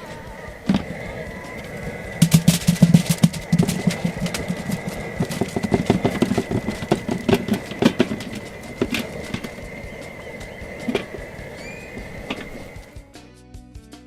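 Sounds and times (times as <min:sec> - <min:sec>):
thin high whine: 0:00.0 - 0:13.0
hard objects clattering: 0:00.6 - 0:12.9.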